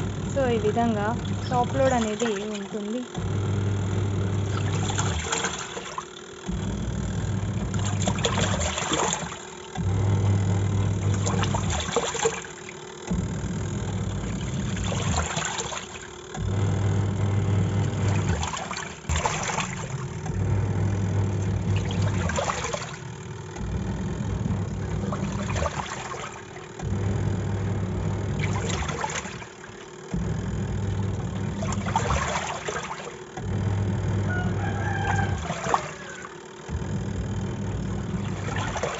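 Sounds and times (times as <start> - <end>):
washing machine motor humming: 0.0 - 38.9
water and clothes churning: 0.0 - 38.9.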